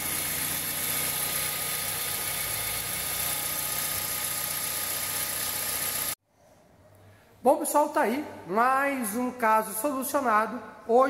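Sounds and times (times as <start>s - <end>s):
car engine idling: 0.0s - 6.1s.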